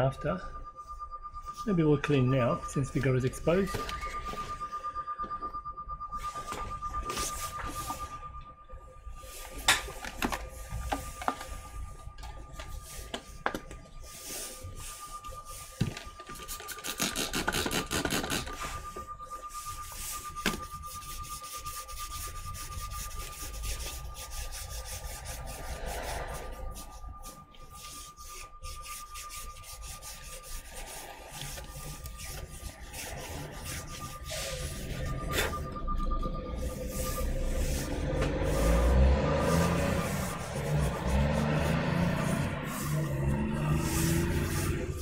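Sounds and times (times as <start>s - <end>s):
thin steady tone: 0.0s - 45.0s
cloth rubbing and wiping: 6.1s - 8.2s, 14.0s - 35.6s, 36.6s - 45.0s.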